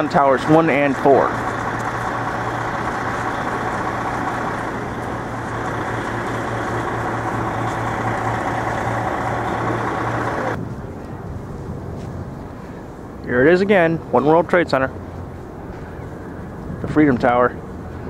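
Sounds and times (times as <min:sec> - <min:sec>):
loud mechanical drone: 0:00.0 - 0:10.6
street background: 0:00.0 - 0:18.0.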